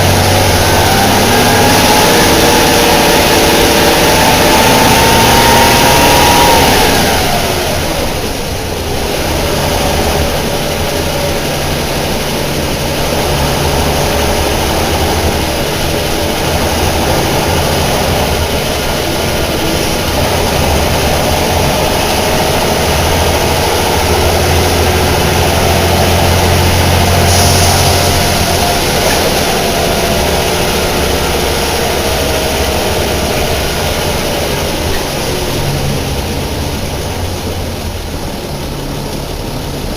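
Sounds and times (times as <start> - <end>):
bus diesel engine under load: 0.0 - 39.9
brief air hiss: 27.3 - 28.1.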